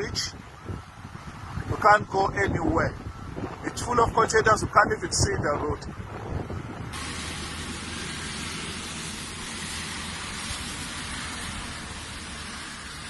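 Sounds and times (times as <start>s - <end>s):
steady water hiss: 6.9s - 13.0s.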